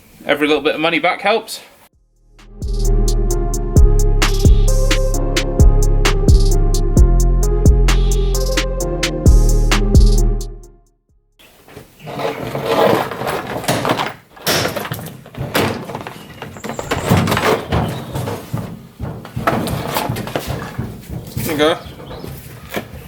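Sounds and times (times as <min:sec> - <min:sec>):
background music: 0:02.0 - 0:11.0
bumper cover knocks and scrapes: 0:11.7 - 0:23.0.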